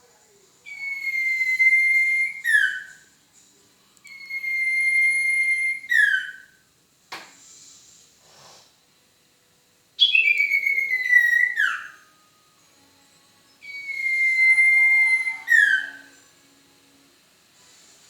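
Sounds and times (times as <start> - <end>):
whistled owl call: 0.7 - 3.1, 4.1 - 6.6, 10.0 - 12.2, 13.6 - 16.2
short breathy hiss: 7.3 - 8.9.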